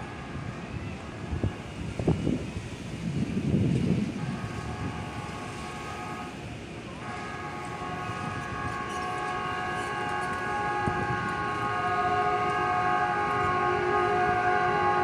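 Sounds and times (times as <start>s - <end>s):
electric train horn blast: 4.0s - 15.0s.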